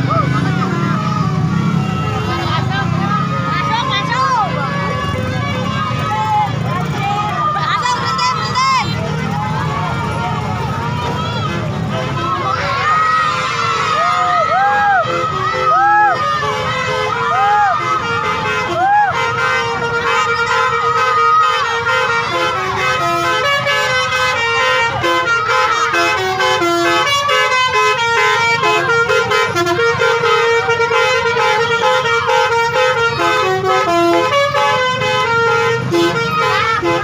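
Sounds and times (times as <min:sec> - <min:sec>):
musical bus air horns: 0:00.1 - 0:37.0.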